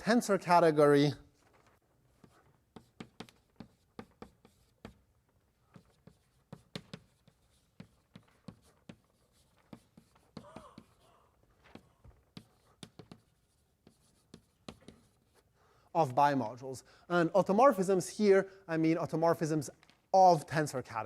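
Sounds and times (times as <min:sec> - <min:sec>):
chalk writing on blackboard: 0:02.1 - 0:15.8.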